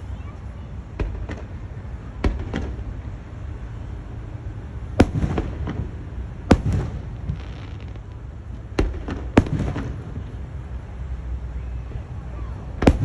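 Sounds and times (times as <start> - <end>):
fireworks bangs: 0.9 - 3.1, 4.9 - 10.5, 12.8 - 13.0
fireworks crackles: 4.8 - 11.4.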